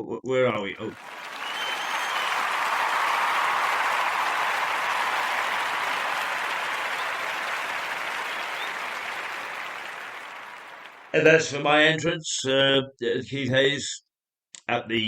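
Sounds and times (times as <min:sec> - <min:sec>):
applause: 0:00.8 - 0:11.3.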